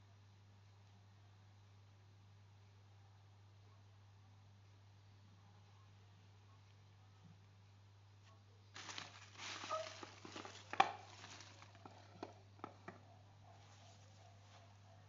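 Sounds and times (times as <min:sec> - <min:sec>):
packaging rustling: 0:08.8 - 0:12.2.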